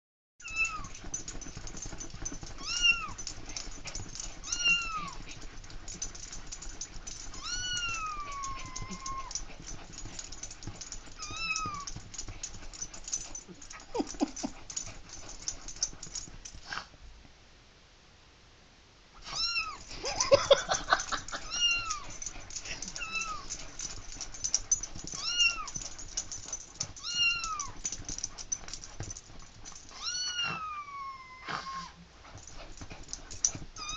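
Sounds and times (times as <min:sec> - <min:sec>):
kitten meow ringtone: 0:00.4 - 0:00.9, 0:04.5 - 0:05.2, 0:07.4 - 0:09.3, 0:27.0 - 0:27.7.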